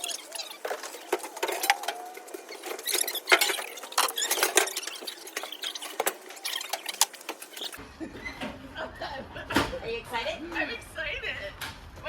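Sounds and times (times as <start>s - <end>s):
objects clicking and rattling: 0.0s - 7.8s.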